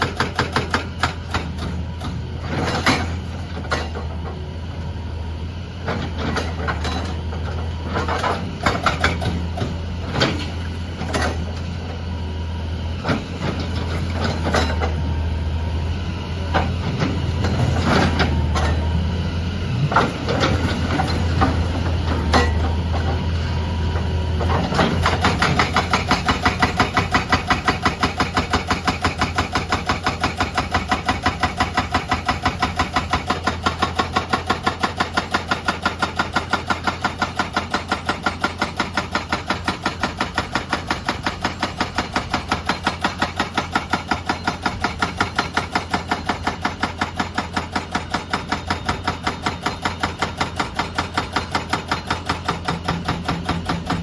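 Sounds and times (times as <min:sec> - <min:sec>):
hydraulic breaker hammering: 0:00.0 - 0:04.1, 0:24.4 - 0:54.0
diesel engine drone: 0:00.0 - 0:54.0.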